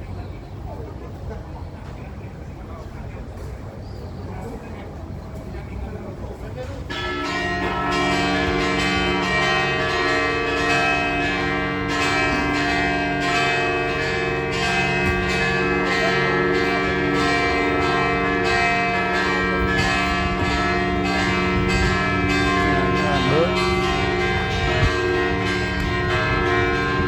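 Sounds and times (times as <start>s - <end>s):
bells ringing in a peal: 6.8s - 27.0s.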